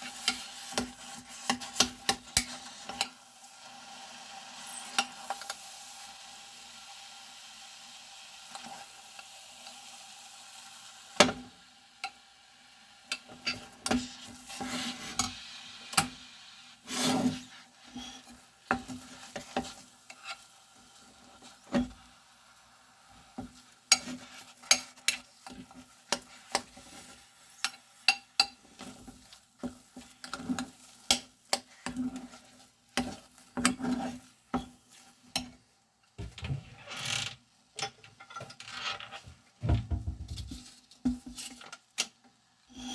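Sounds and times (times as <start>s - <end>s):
utensil scraping in a pan: 0.0s - 3.2s, 13.1s - 22.2s, 23.0s - 35.6s
faint sizzle: 0.0s - 38.5s, 40.4s - 42.9s.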